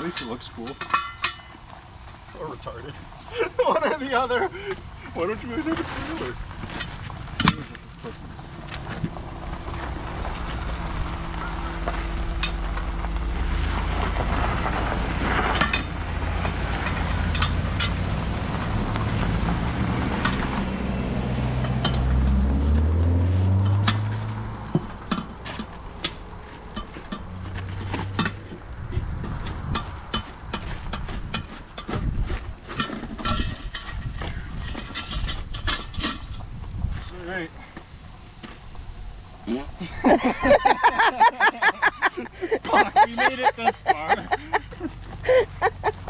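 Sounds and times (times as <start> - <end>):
car engine accelerating: 8.0 - 30.1
sharp clicks and knocks: 23.6 - 32.1.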